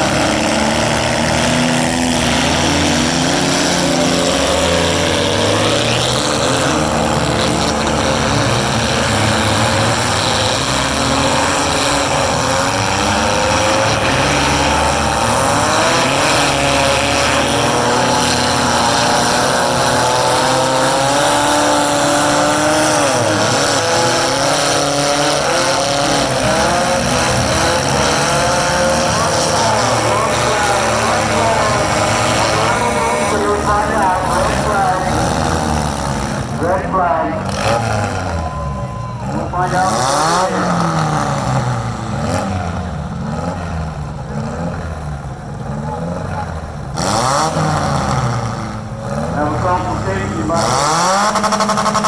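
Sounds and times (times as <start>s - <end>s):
car engines revving: 0.0s - 52.0s.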